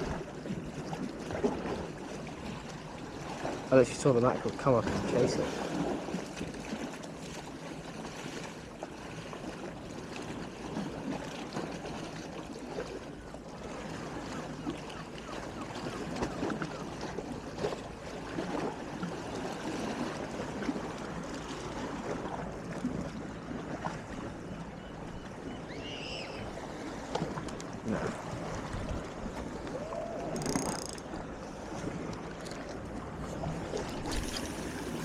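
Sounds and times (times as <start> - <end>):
small waves lapping at shore: 0.0 - 35.0
small splashes and clicks: 27.1 - 27.8, 29.6 - 31.2, 32.0 - 32.9, 33.7 - 35.0.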